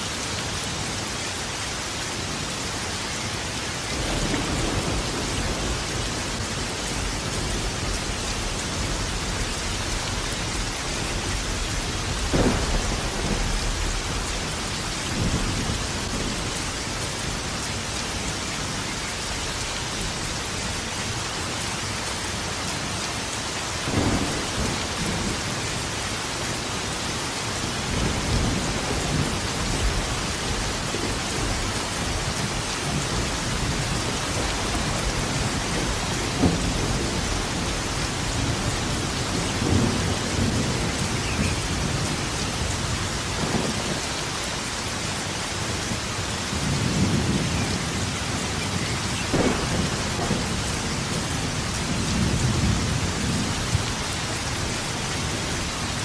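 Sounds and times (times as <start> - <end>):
heavy rain: 0.0 - 56.0
thunder rumbling: 3.9 - 18.4, 23.8 - 27.0, 27.6 - 55.7
thunder cracks: 10.9 - 16.5, 23.9 - 25.9, 27.9 - 38.6, 49.3 - 53.5.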